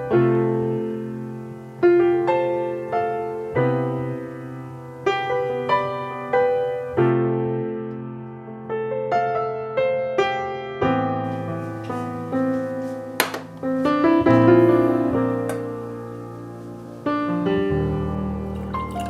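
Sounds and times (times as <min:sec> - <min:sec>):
slow gentle solo piano: 0:00.0 - 0:19.0.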